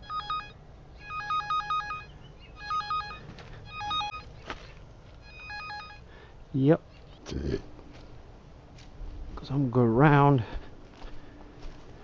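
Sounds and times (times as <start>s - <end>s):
electronic warbling beeps: 0.0s - 4.3s, 5.2s - 6.0s.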